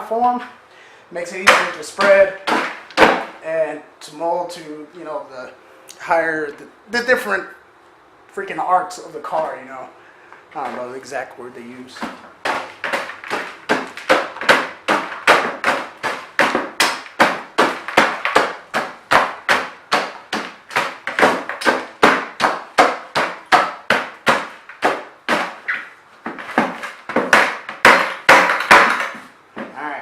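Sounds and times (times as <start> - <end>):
hammer pounding dry ice: 26.6 - 29.2.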